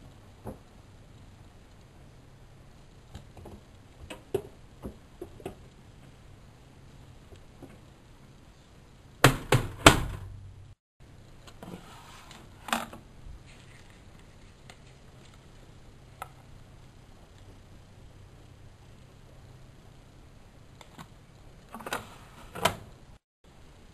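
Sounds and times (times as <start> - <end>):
knocks on washing machine: 9.2 - 10.2.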